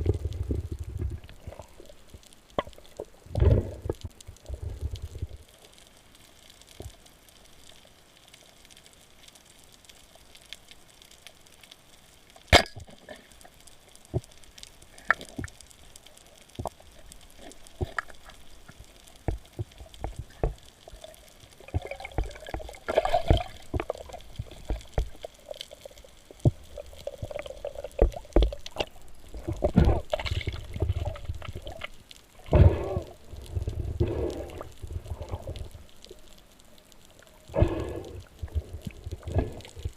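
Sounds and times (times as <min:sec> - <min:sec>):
low rumbles: 0:00.0 - 0:01.7
water sloshing and bubbling: 0:00.0 - 0:39.9.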